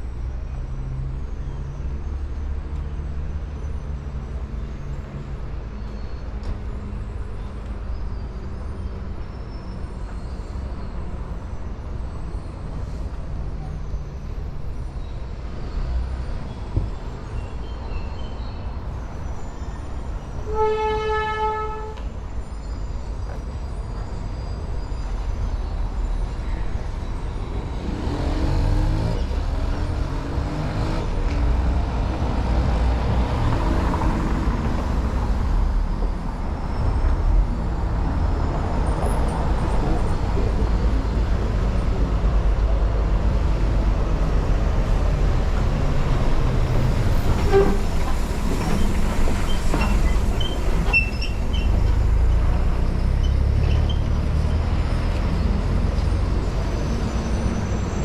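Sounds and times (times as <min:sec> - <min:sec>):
car horn: 0:20.4 - 0:22.0
vehicle engines rumbling: 0:21.8 - 0:58.0.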